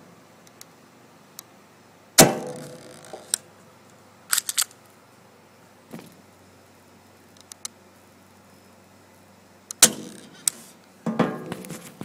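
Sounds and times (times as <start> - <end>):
airsoft pistol shot: 2.2 - 2.8, 9.8 - 10.3
pistol clicks: 4.3 - 4.8.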